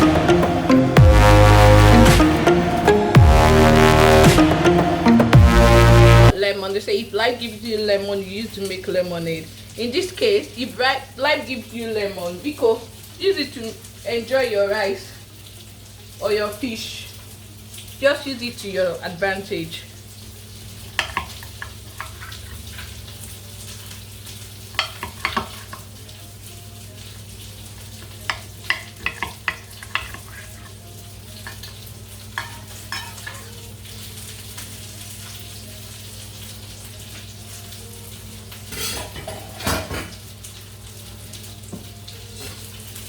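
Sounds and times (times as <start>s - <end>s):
low hum: 0.0s - 6.4s
food sizzling in a pan: 6.3s - 43.0s
metal utensil scraping cookware: 29.0s - 30.7s.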